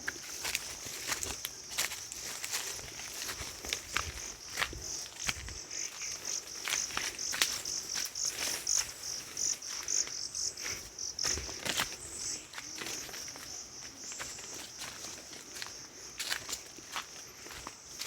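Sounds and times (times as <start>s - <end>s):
insect chirping in pulsed trill: 0.4s - 18.0s.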